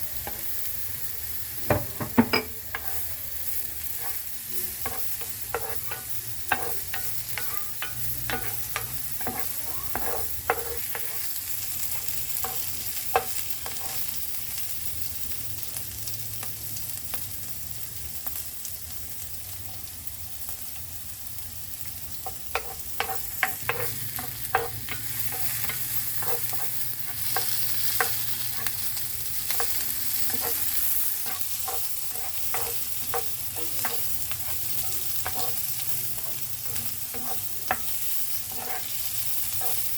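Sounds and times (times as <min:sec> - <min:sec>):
food sizzling in oil: 0:00.0 - 0:39.9
utensil scraping a pan: 0:01.6 - 0:03.1, 0:03.8 - 0:14.1, 0:22.2 - 0:39.9.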